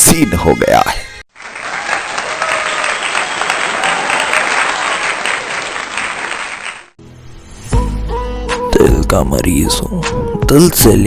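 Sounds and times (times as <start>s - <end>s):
audience applauding: 1.3s - 7.0s.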